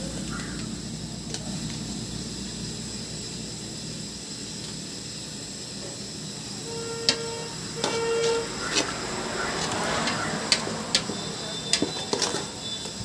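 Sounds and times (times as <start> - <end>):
masala sizzling in a pan: 0.0 - 13.0
metallic squeak and clink: 6.8 - 13.0.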